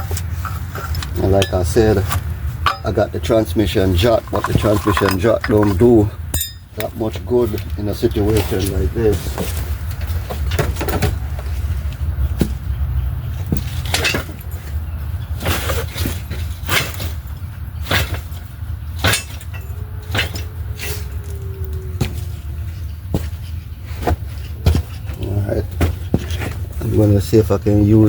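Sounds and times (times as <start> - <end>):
metal clanks and knocks: 0.0 - 6.9, 13.4 - 14.6, 19.0 - 22.3.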